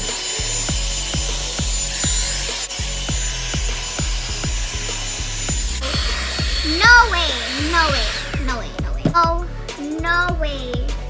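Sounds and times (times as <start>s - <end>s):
hair dryer brush blowing: 0.0s - 9.2s
music with kick drum beat: 0.0s - 11.0s.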